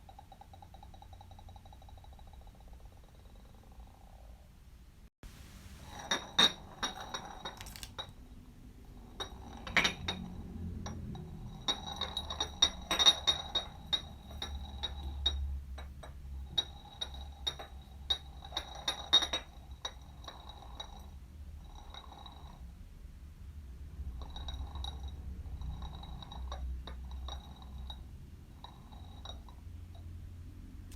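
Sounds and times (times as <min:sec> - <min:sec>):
jar rolling across floor: 0:05.8 - 0:08.2, 0:08.9 - 0:22.6.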